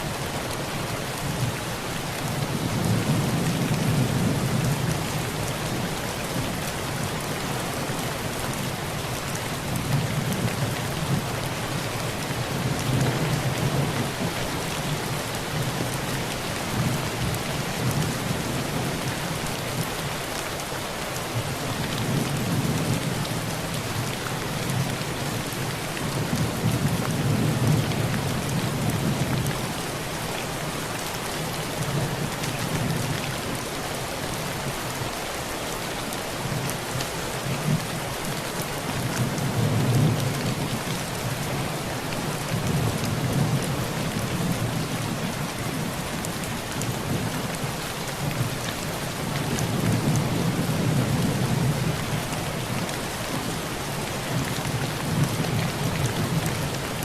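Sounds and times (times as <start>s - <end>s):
heavy rain on a tin roof: 0.0s - 57.0s.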